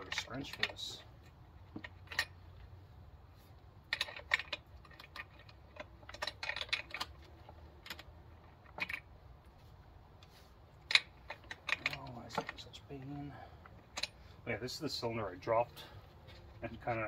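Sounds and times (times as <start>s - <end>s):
wrench and metal parts clinking: 0.0s - 2.7s, 3.8s - 9.1s, 10.8s - 14.2s.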